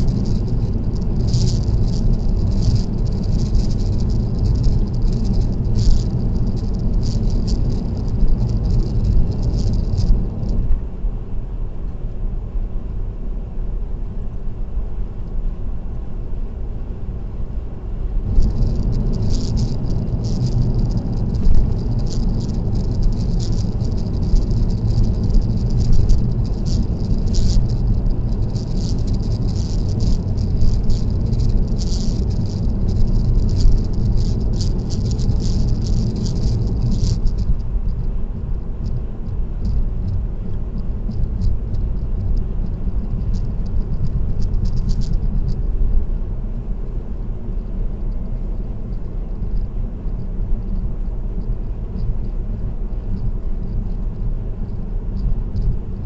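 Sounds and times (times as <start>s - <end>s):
high-pitched rattle: 0.0s - 10.7s, 18.2s - 38.2s, 38.8s - 46.0s
car tyre and road noise: 0.0s - 56.0s.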